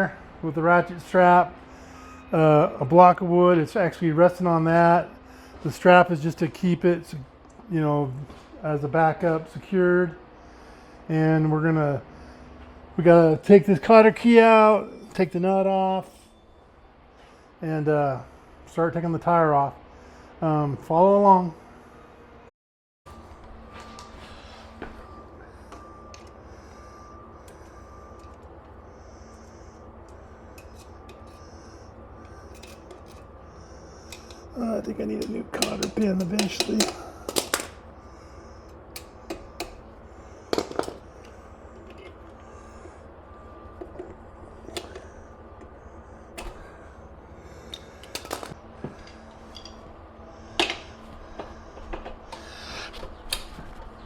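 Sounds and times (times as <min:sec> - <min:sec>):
steady low hum: 0:00.0 - 0:22.5, 0:23.1 - 0:54.0
small metal clicks and scrapes: 0:30.5 - 0:31.5, 0:32.2 - 0:33.3, 0:34.1 - 0:34.4
hand tools clicking on metal: 0:34.0 - 0:37.7.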